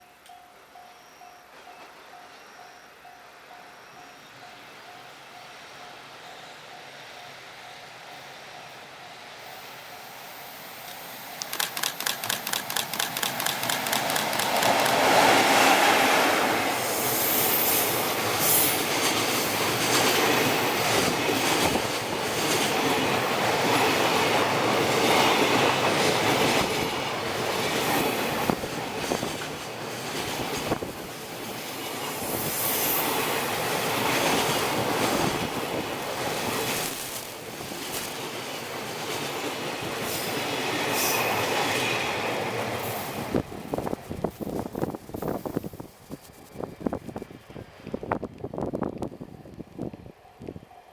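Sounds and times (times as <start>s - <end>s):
wheel clicks over rail joints: 11.4s - 15.2s.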